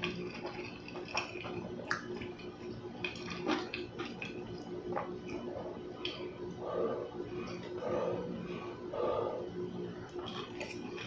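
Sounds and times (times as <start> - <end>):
chewing with wet smacks: 0.0 - 6.3, 10.0 - 11.0
steady low hum: 0.0 - 11.0.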